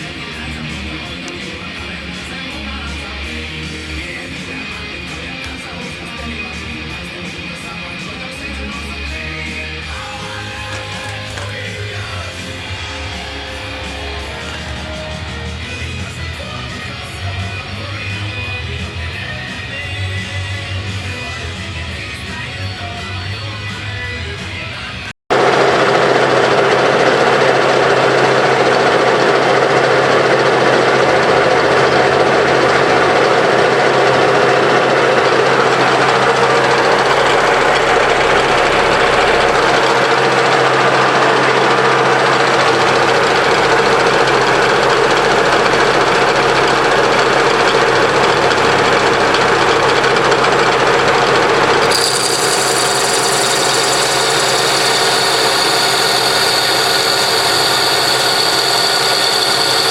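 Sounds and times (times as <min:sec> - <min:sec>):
high steady whine: 0:25.3 - 0:59.9
metal lathe cutting steel: 0:25.3 - 0:59.9.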